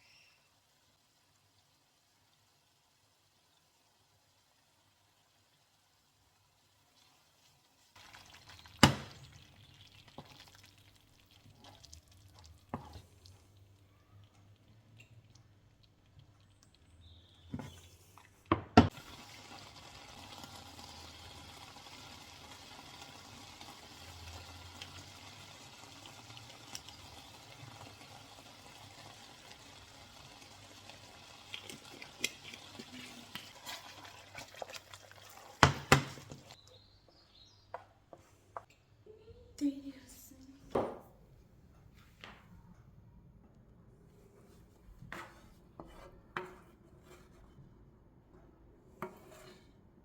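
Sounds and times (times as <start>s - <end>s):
tap running water: 8.0s - 11.7s, 18.8s - 36.6s.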